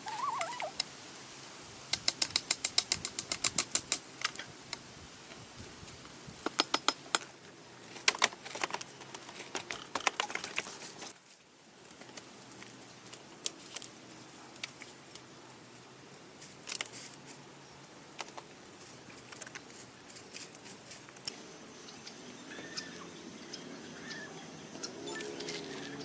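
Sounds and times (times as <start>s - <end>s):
small clicks and crackles: 7.9s - 11.2s, 16.4s - 17.4s
short chirping calls: 21.3s - 26.0s.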